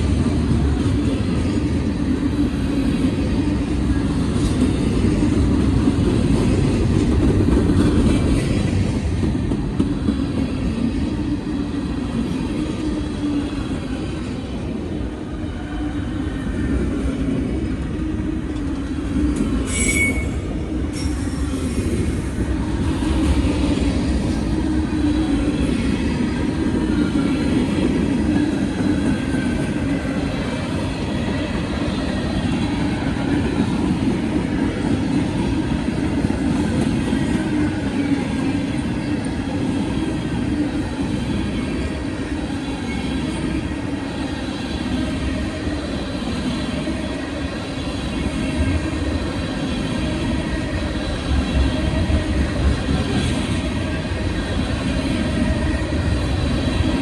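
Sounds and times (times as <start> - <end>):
train wheels rumbling on rails: 0.0 - 57.0
high wheel squeal: 19.6 - 21.5.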